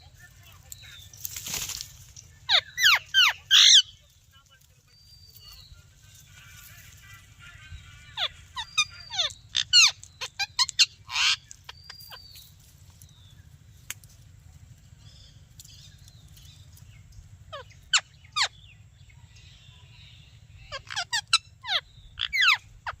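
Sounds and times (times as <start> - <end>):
low steady hum: 0.0 - 23.0
parrot chirping: 2.4 - 4.1, 6.4 - 12.5, 17.5 - 18.7, 20.6 - 23.0.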